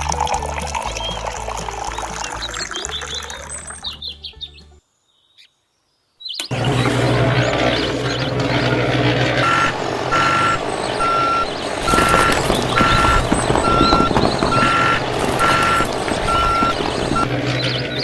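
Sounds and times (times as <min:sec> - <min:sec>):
truck engine noise: 0:06.5 - 0:18.0
reversing alarm beeping: 0:06.6 - 0:18.0.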